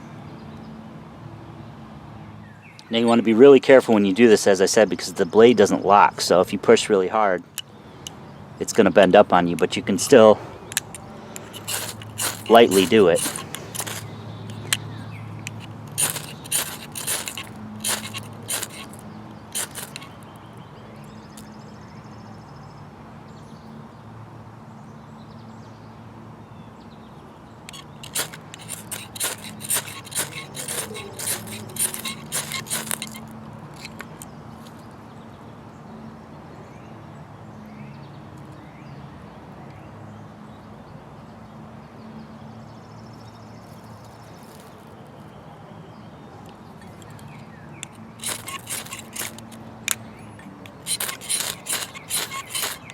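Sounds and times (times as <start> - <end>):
saw blade scraping ferro rod: 10.8 - 14.8, 15.4 - 20.2, 27.7 - 34.8, 46.8 - 52.9.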